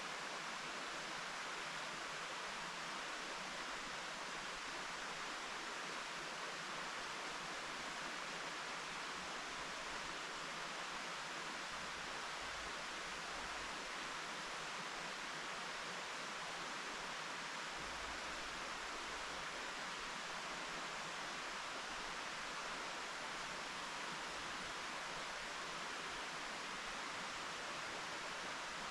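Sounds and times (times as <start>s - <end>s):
stream rushing over rocks: 0.0s - 28.9s.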